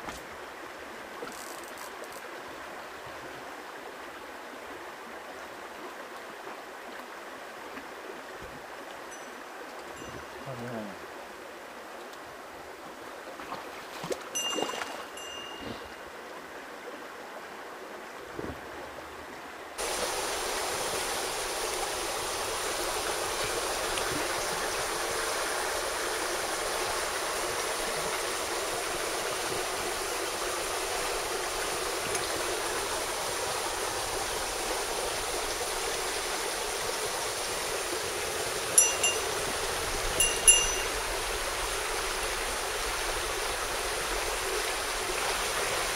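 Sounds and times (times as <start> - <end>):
stream water rushing: 0.0 - 45.9
ringing metallic clinks: 9.1 - 9.4, 14.4 - 16.0, 38.8 - 39.4, 40.2 - 41.1.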